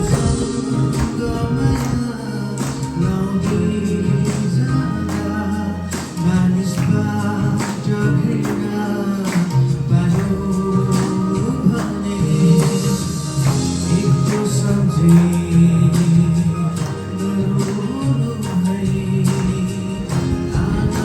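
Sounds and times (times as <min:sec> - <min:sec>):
instrumental backing with beat: 0:00.0 - 0:21.0
man singing worship song: 0:00.0 - 0:21.0.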